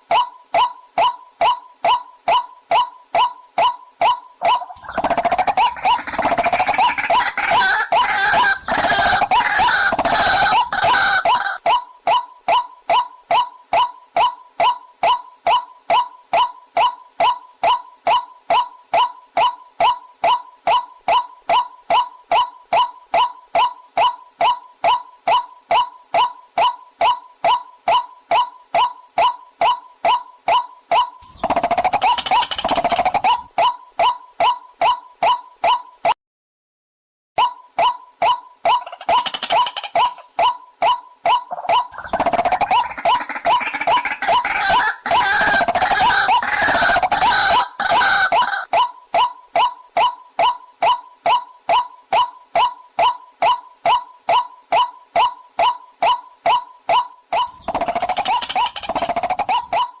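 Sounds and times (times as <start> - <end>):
waterhen calls: 0.0 - 19.6, 37.4 - 60.0.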